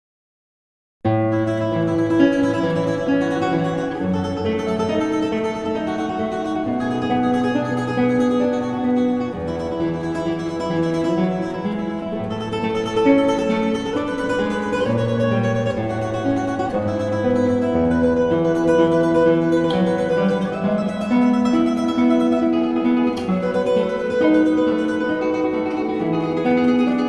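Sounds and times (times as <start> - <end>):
acoustic guitar slow melody: 1.1 - 27.0.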